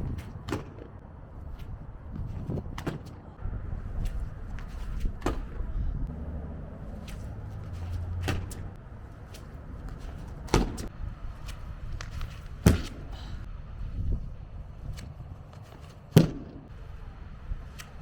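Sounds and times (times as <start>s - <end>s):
low rumble: 3.4s - 9.9s.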